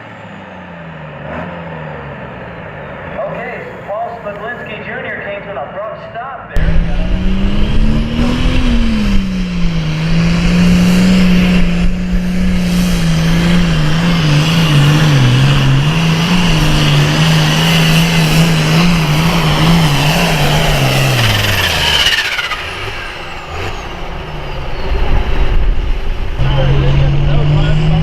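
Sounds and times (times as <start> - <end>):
tractor diesel engine at full throttle: 6.6 - 28.0.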